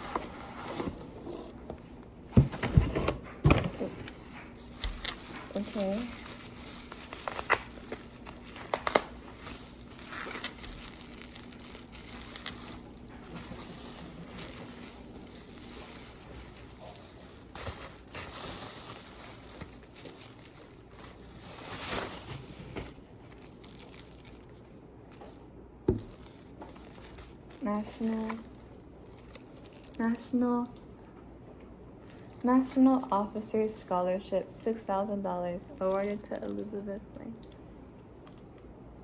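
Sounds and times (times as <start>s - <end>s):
paper packaging crinkling: 3.8s - 30.5s, 32.0s - 34.0s, 35.7s - 36.7s.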